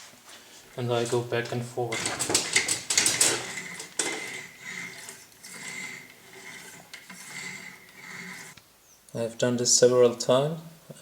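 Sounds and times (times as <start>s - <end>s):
cleaning rod scraping in rifle barrel: 1.0s - 8.6s.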